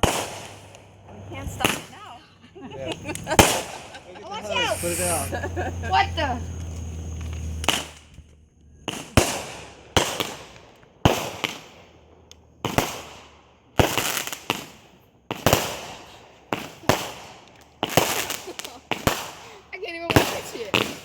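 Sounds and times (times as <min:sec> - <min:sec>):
firework bangs: 0:00.0 - 0:02.0, 0:03.2 - 0:05.4, 0:08.9 - 0:12.0, 0:12.6 - 0:21.0.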